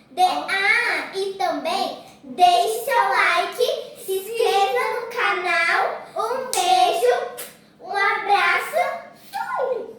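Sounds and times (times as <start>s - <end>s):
hand claps: 6.5s - 6.7s.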